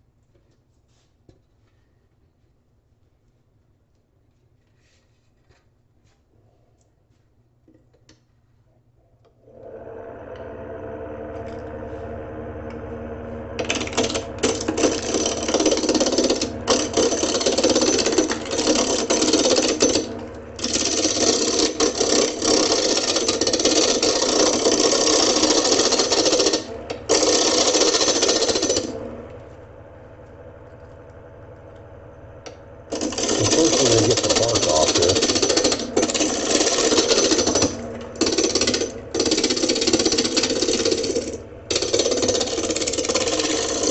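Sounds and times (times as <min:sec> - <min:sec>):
wood lathe motor humming: 0:09.5 - 0:43.9
turning tool scraping wood: 0:13.6 - 0:28.9, 0:32.9 - 0:43.9.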